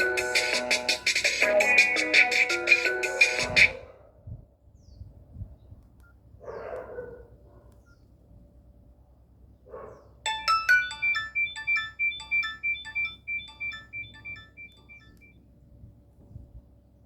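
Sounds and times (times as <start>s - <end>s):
phone ringtone melody: 0.0s - 3.8s, 10.3s - 15.4s.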